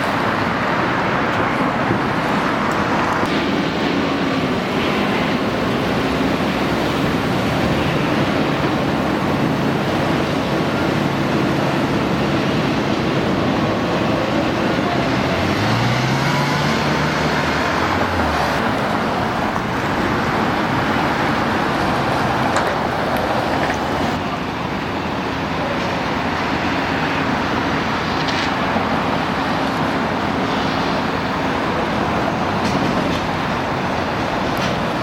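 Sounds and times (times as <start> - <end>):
road traffic passing: 0.0 - 35.0
vehicle engine revving: 13.6 - 24.2.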